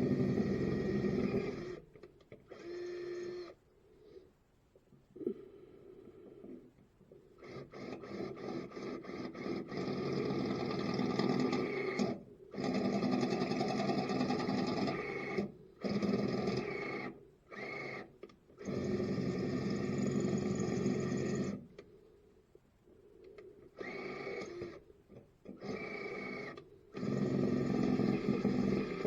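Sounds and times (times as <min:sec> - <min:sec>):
electric drill drilling metal: 0:00.0 - 0:01.8, 0:07.5 - 0:21.6, 0:25.6 - 0:29.0.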